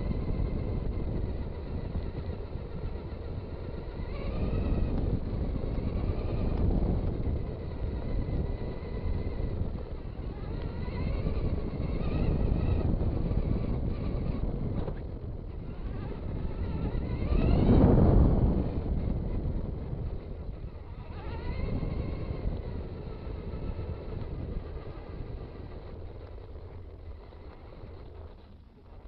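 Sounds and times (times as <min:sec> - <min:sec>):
electric motor whining: 0:00.0 - 0:29.0
steady low rumble: 0:00.0 - 0:29.0.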